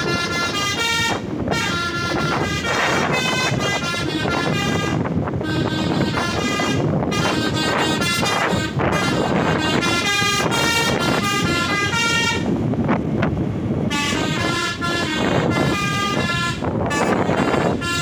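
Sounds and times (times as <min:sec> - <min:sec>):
multi-tone bus horn tooting melody: 0:00.0 - 0:12.7, 0:13.8 - 0:18.0
steady low rumble: 0:00.0 - 0:18.0.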